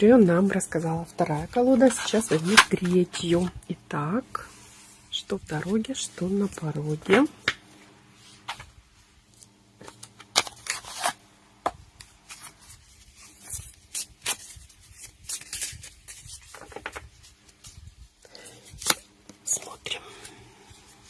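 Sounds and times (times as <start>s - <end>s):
cards being shuffled: 1.3s - 3.6s, 12.0s - 19.4s.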